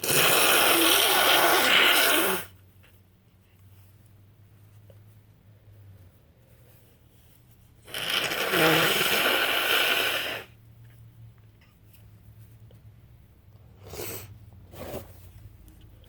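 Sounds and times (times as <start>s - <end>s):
woman blowing her nose: 0.0s - 2.5s, 7.8s - 10.6s, 13.8s - 14.3s.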